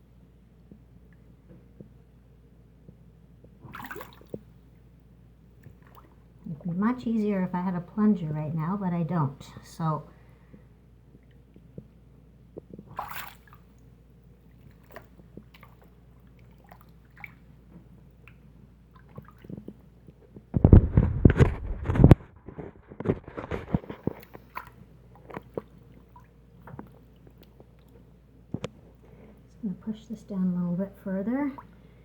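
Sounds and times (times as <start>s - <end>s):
water sloshing in sink: 3.6s - 4.6s, 5.6s - 8.1s, 12.6s - 30.3s
water drips: 14.5s - 20.2s, 24.2s - 29.0s.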